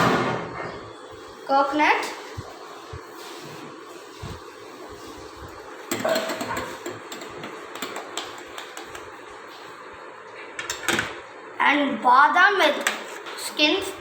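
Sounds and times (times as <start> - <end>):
steady room hiss: 0.0 - 14.0
kitchen items knocking and clattering: 5.9 - 9.0.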